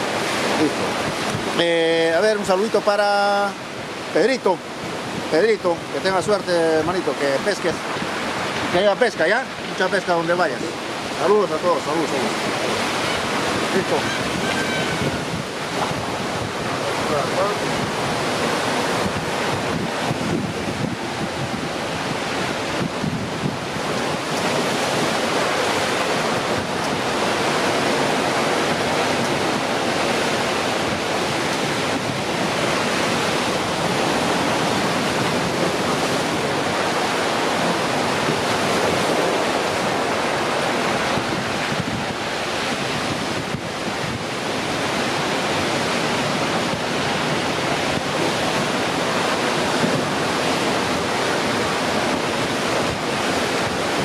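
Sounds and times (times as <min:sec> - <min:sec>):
wind buffeting microphone: 0:00.0 - 0:02.8, 0:03.5 - 0:54.0
sea surf: 0:00.0 - 0:54.0
wind: 0:00.0 - 0:54.0.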